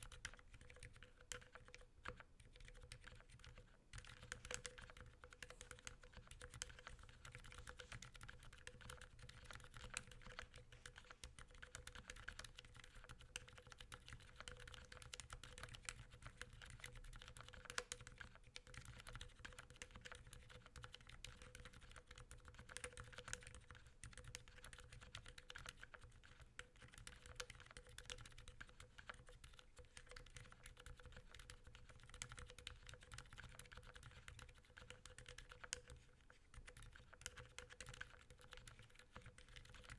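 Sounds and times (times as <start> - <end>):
muted keyboard typing: 0.0 - 39.9.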